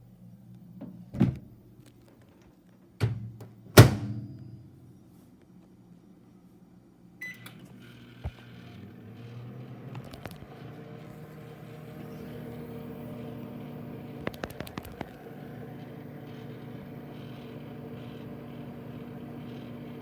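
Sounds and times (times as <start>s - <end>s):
microwave oven humming: 7.1s - 20.0s
sharp clicks: 14.2s - 15.2s.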